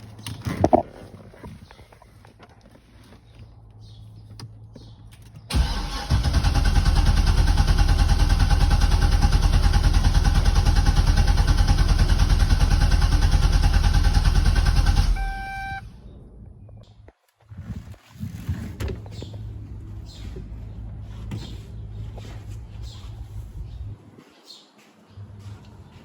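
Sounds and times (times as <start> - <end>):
car engine cranking: 5.2 - 15.8
electronic beep: 15.2 - 15.9.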